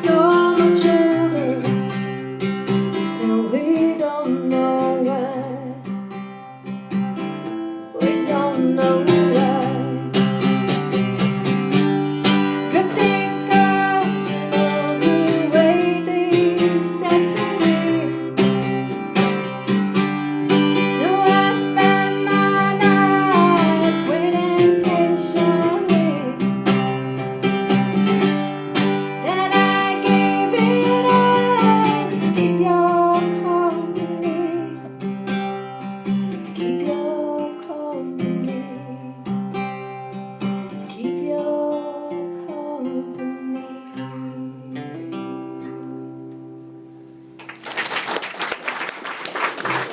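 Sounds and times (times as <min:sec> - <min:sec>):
person singing: 0:00.0 - 0:02.3, 0:02.9 - 0:05.9, 0:08.0 - 0:11.0, 0:12.5 - 0:19.0, 0:20.6 - 0:26.6, 0:29.1 - 0:34.9, 0:36.4 - 0:39.3, 0:40.7 - 0:45.2
strummed acoustic guitar: 0:00.0 - 0:47.4.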